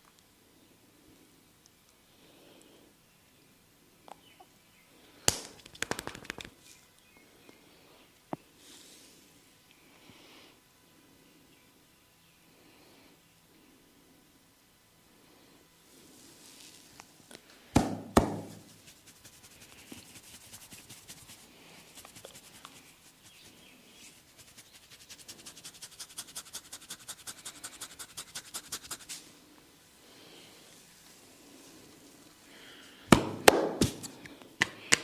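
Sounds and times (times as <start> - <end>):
hands slapping head: 5.3 - 6.6, 17.8 - 18.6, 33.1 - 35.0
fast drumming of hand strokes: 17.8 - 23.6, 24.3 - 29.2
soft rubbing and patting: 18.1 - 29.3.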